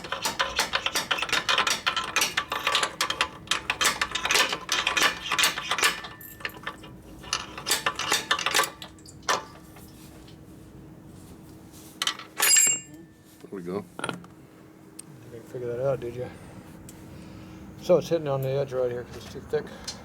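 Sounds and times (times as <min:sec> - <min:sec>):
metal tapping and clinking: 0:00.0 - 0:10.0, 0:12.0 - 0:13.0.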